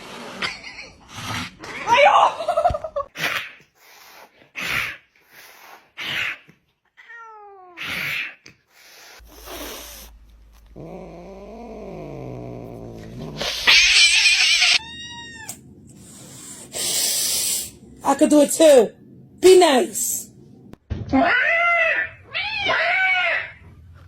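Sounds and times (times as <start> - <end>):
cats hissing: 3.1 - 18.0
cat yowling: 13.4 - 15.6, 21.2 - 23.6
cat meowing: 13.5 - 15.6, 21.2 - 23.6.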